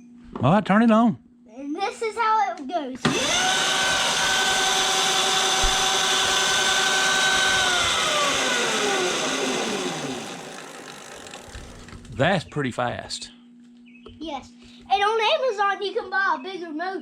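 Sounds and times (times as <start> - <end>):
electric motor high whine: 3.0 - 12.2.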